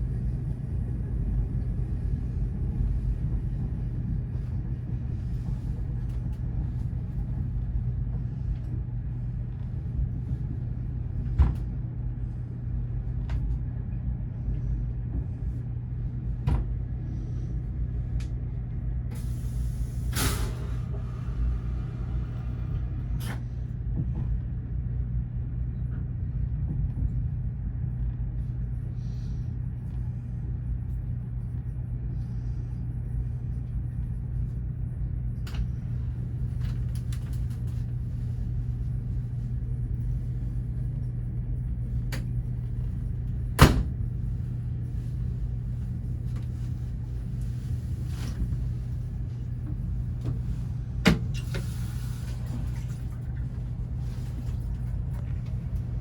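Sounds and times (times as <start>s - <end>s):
train rumble and hum: 0.0s - 56.0s.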